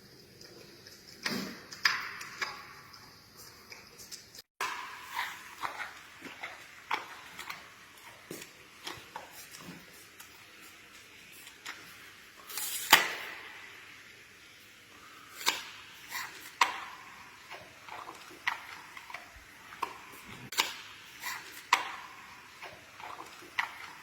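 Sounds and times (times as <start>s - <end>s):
panda chewing with cracks: 3.4s - 10.6s, 15.3s - 24.0s.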